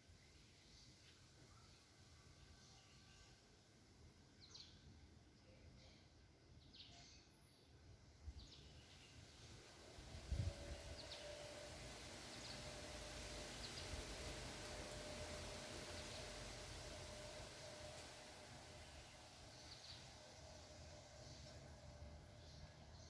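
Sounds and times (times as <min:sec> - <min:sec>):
faint steady hum: 0:00.0 - 0:23.0
low hiss: 0:00.0 - 0:23.0
faint bird chirps: 0:00.2 - 0:03.5, 0:04.4 - 0:07.8.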